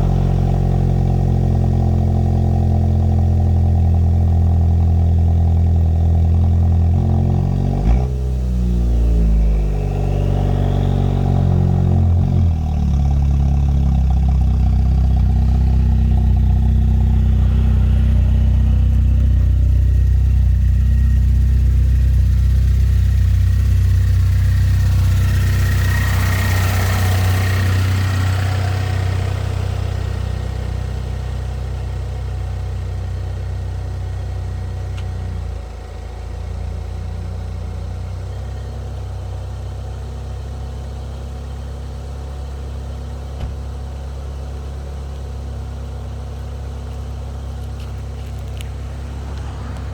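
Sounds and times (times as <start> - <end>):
car engine idling: 0.0 - 49.9
hiss with thin whistle: 9.2 - 12.0.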